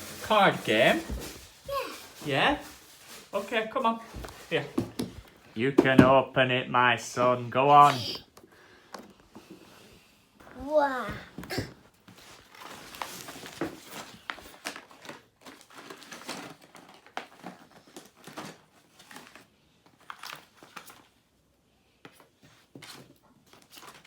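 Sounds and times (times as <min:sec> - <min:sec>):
packaging being torn and crinkled: 0:14.4 - 0:19.3.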